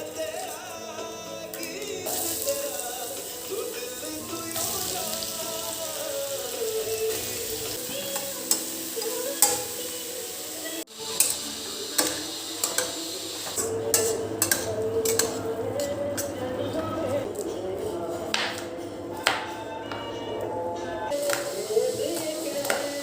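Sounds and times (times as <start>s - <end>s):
soft background music: 0.0s - 23.0s
steady hiss: 21.1s - 23.0s.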